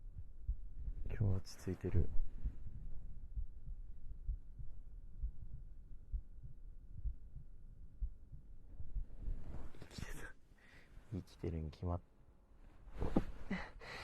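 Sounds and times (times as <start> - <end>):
heartbeat thumps: 0.0 - 9.8.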